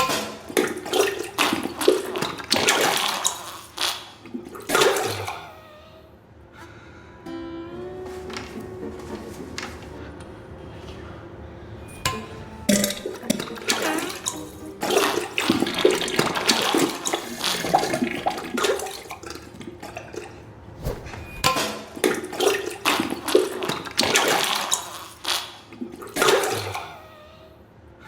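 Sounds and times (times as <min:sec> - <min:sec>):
wet sputtering splats into toilet water: 0:00.0 - 0:05.3, 0:12.9 - 0:20.3.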